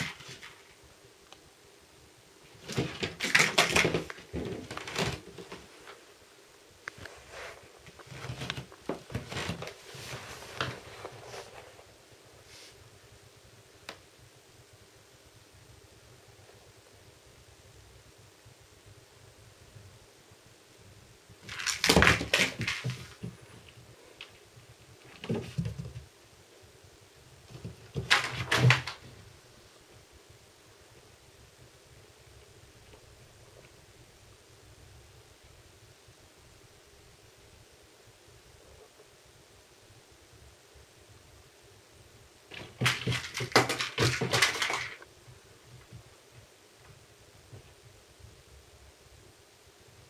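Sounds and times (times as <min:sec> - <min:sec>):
kitten scuffling with toy: 0:00.0 - 0:00.8, 0:07.0 - 0:12.8, 0:21.4 - 0:23.8, 0:42.5 - 0:45.0.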